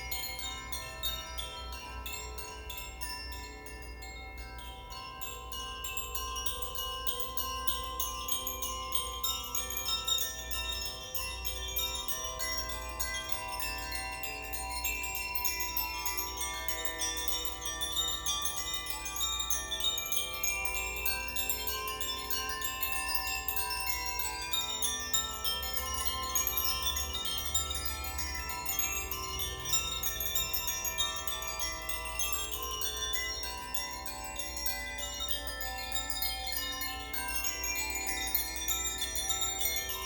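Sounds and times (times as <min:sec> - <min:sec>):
metal wind chimes ringing: 0:00.0 - 0:40.0.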